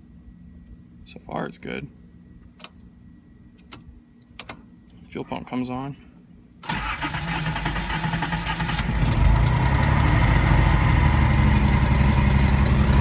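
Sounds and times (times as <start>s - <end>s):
car engine cranking and running: 6.6s - 13.0s.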